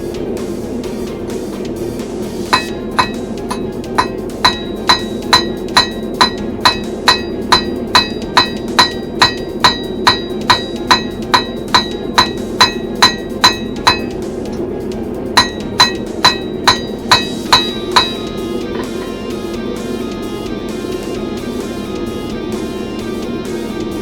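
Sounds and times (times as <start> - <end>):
hammer ringing on anvil: 2.5 - 14.3, 15.4 - 19.4.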